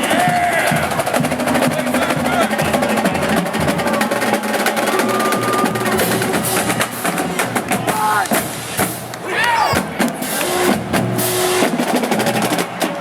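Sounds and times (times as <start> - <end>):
snare drum rolls: 0.0 - 13.0.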